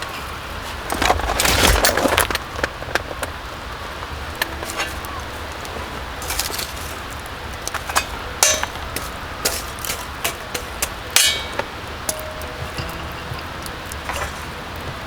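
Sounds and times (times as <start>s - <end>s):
steady low background noise: 0.0s - 15.0s
hard objects knocking and clinking: 7.7s - 15.0s.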